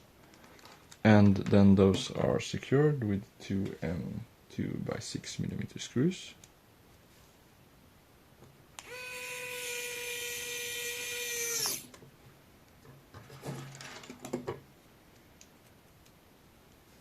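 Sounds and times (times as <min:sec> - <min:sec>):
electric screwdriver whining: 0:08.8 - 0:11.9.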